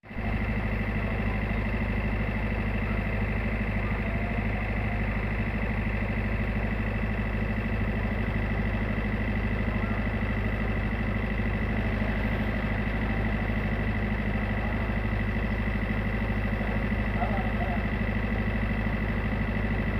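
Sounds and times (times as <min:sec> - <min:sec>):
diesel engine drone: 0:00.0 - 0:19.9.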